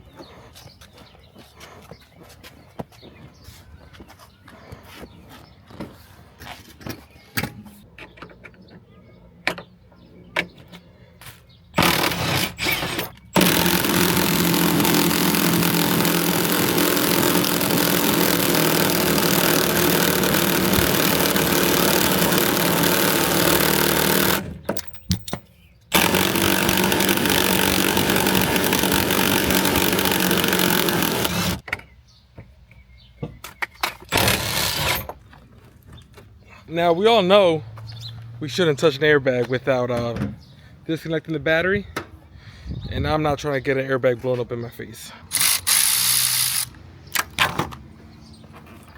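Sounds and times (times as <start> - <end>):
power tool running: 11.8 - 31.6, 34.1 - 35.1, 45.3 - 46.8.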